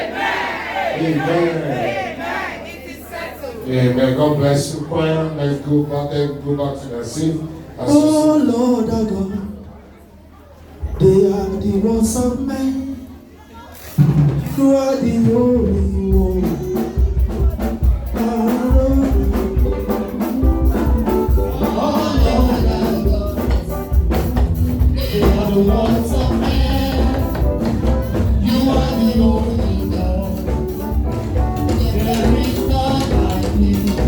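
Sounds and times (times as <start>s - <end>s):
choir singing a worship song: 0.0s - 3.7s, 18.4s - 24.0s, 24.8s - 30.9s, 31.6s - 34.0s
band with strong bass: 13.8s - 34.0s
steady percussion: 13.9s - 34.0s.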